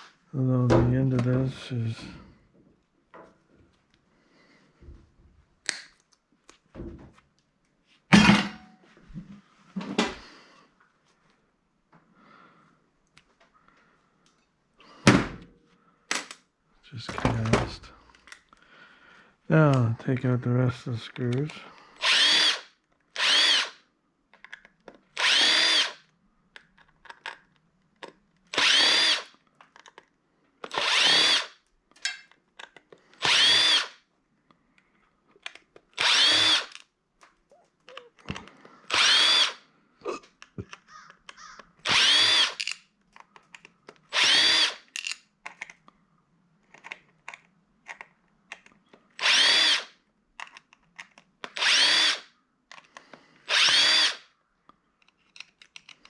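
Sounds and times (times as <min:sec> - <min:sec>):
power drill spinning: 0:22.0 - 0:23.8, 0:25.1 - 0:26.1, 0:28.5 - 0:29.4, 0:30.6 - 0:31.6, 0:33.1 - 0:34.0, 0:35.9 - 0:36.9, 0:38.2 - 0:39.7, 0:40.9 - 0:42.8, 0:44.1 - 0:45.2, 0:49.2 - 0:50.0, 0:51.4 - 0:52.3, 0:53.0 - 0:54.3
parts and screws rattling: 0:26.6 - 0:33.6, 0:40.4 - 0:45.9, 0:55.0 - 0:56.0.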